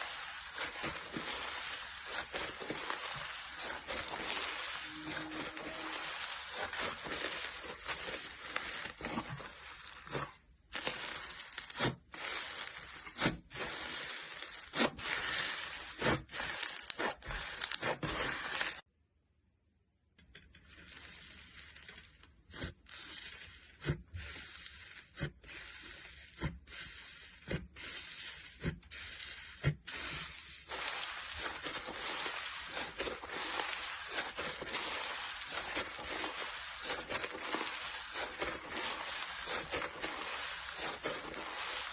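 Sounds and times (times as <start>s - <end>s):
slime crackling and popping: 0.0s - 18.8s, 27.1s - 41.9s.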